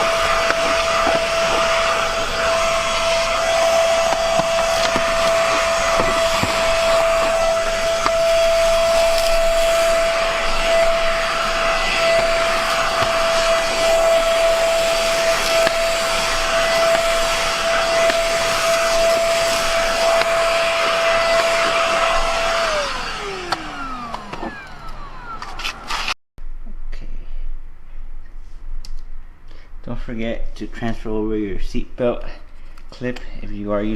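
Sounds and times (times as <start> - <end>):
motor winding down: 0.0 - 26.2
vacuum cleaner running: 0.0 - 26.2.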